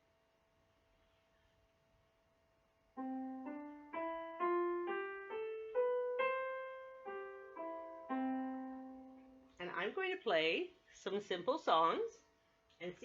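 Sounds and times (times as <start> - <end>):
piano single notes: 3.0 - 9.6.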